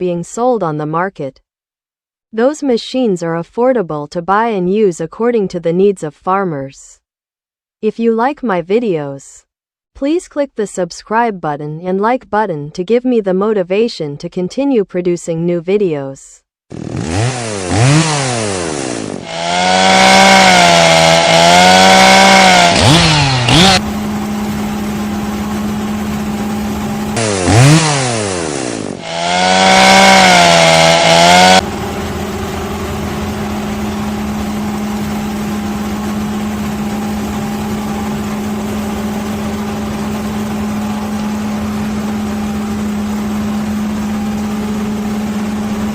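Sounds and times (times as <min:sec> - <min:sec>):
chainsaw engine at high revs: 0:16.7 - 0:45.9
engine idling: 0:17.2 - 0:45.9.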